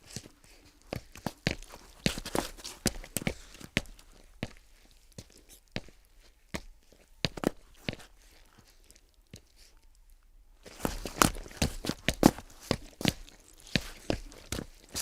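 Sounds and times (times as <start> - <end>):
sharp footsteps: 0.9 - 6.0, 10.6 - 15.0.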